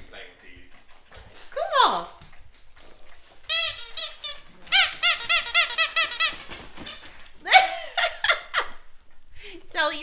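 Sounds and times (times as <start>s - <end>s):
squeaky dog toy squeaking: 3.5s - 7.3s.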